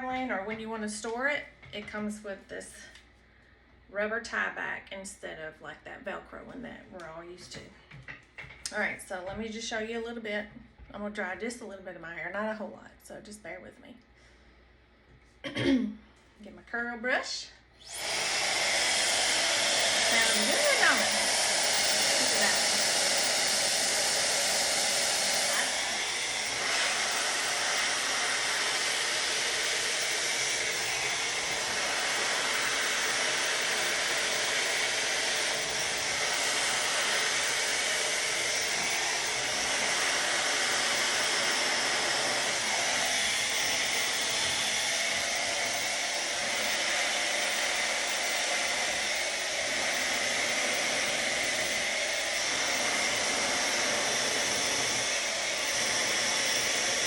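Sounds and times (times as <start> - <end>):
hair dryer blowing: 17.8 - 57.0.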